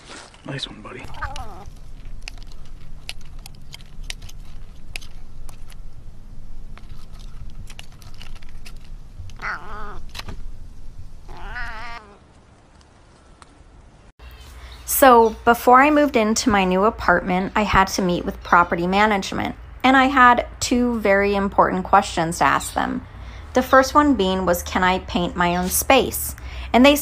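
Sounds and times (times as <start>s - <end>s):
cat meowing: 1.0s - 1.7s, 9.4s - 10.1s, 11.2s - 12.2s
low hum: 1.6s - 19.8s.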